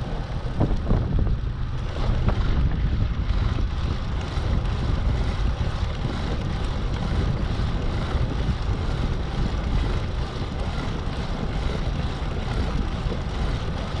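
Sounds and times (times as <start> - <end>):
wind buffeting microphone: 0.0 - 14.0.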